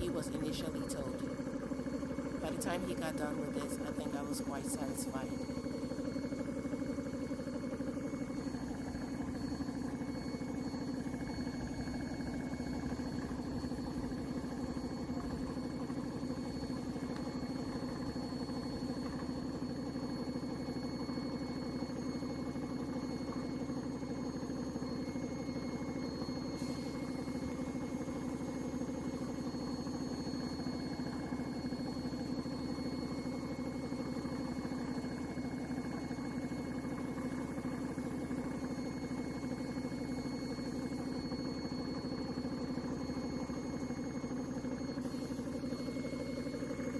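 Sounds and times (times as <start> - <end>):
compressor chugging: 0.0 - 46.9
faint high whine: 0.0 - 46.9.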